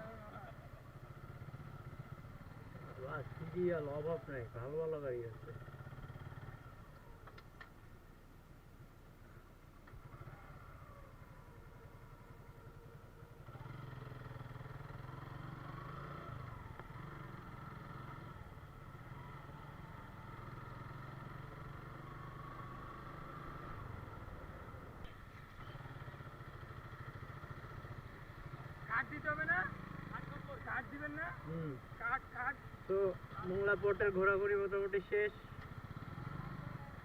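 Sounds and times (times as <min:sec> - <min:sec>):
motorcycle engine running: 0:00.0 - 0:07.3, 0:09.7 - 0:37.0.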